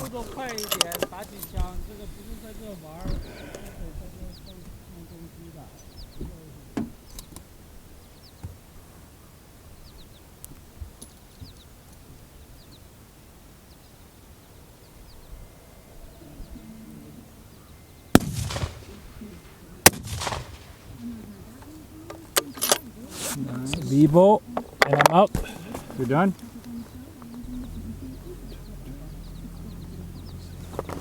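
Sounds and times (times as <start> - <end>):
faint clicks: 10.4 - 12.1, 26.3 - 31.0
rifle shots: 18.1 - 21.4.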